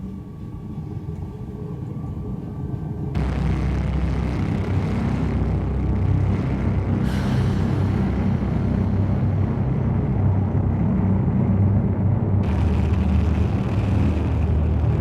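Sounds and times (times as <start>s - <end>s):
low vehicle rumble: 0.0s - 15.0s
hiss: 7.0s - 9.3s.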